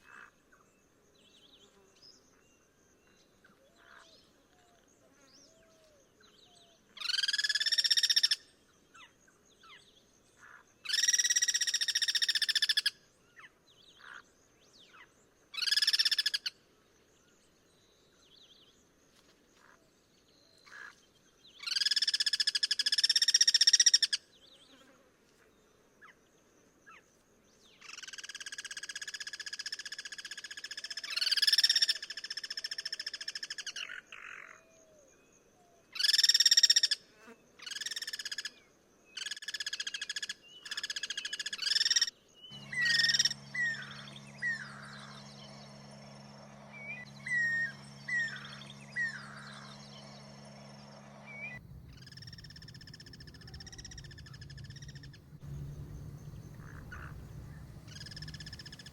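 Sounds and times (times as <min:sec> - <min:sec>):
quiet bird chirps: 0:38.4 - 0:58.9
cuckoos calling raspily: 0:41.9 - 0:45.7, 0:51.3 - 0:58.9
steady low hum: 0:42.5 - 0:58.9.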